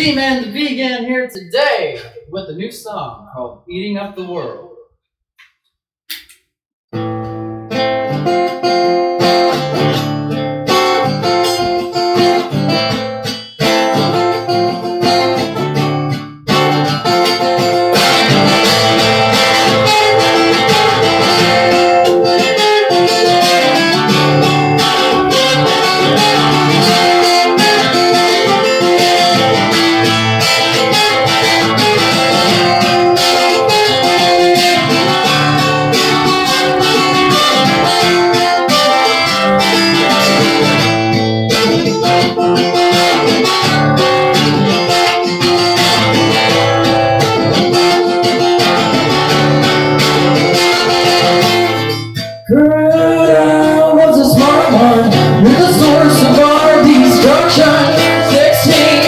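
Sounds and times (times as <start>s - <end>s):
guitar playing: 0.0s - 4.8s, 6.9s - 59.0s.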